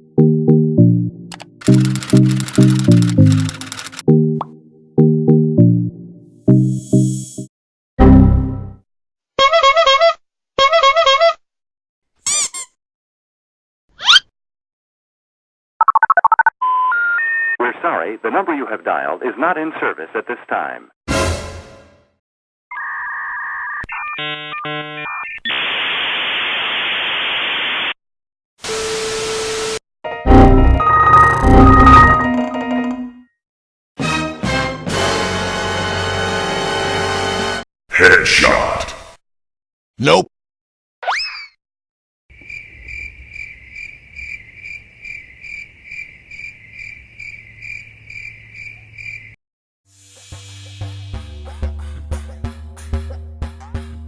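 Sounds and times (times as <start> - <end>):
click: 1.3 - 4.5
loud static hiss: 25.5 - 27.9
electronic beeping tones: 30.4 - 32.4
crickets chirping: 42.3 - 49.4.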